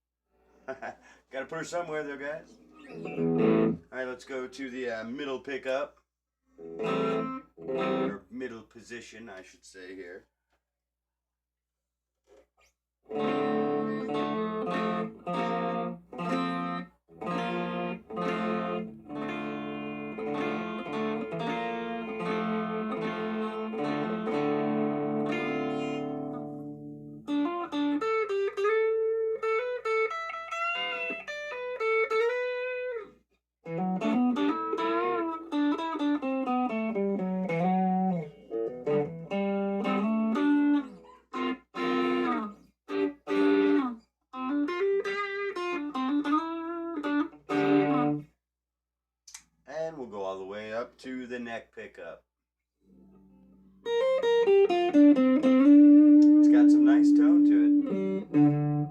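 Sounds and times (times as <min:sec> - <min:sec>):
overdriven electric guitar: 0:02.5 - 0:03.8, 0:06.6 - 0:08.2, 0:13.1 - 0:48.3, 0:52.9 - 0:58.9.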